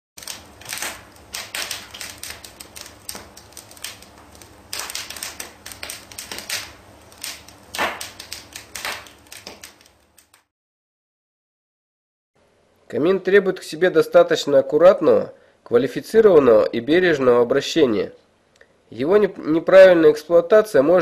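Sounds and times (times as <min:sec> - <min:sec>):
fire hiss: 0:00.2 - 0:10.4
wood fire crackling and popping: 0:00.2 - 0:10.5.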